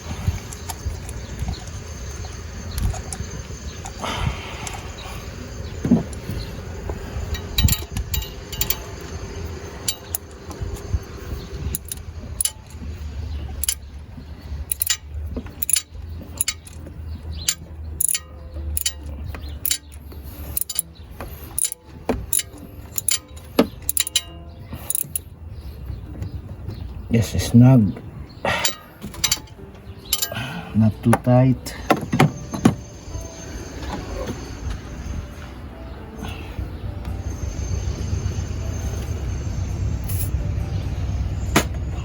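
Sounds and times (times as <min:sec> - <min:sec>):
low background rumble: 0:00.0 - 0:42.0
ratchet and socket clicking: 0:11.7 - 0:12.8, 0:13.5 - 0:13.8, 0:14.6 - 0:20.9, 0:21.5 - 0:25.3.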